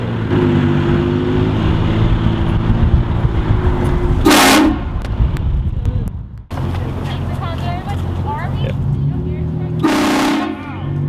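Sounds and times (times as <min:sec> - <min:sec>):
low engine rumble: 0:00.0 - 0:11.0
air horns blowing a chord: 0:04.2 - 0:05.0, 0:09.8 - 0:11.0.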